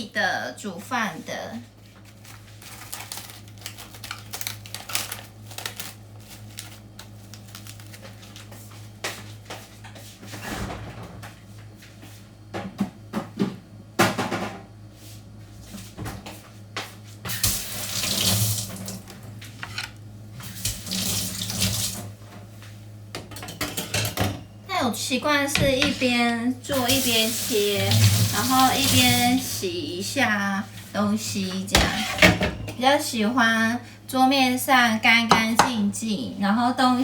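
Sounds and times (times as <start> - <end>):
steady low hum: 18.5 - 20.9, 21.9 - 37.0.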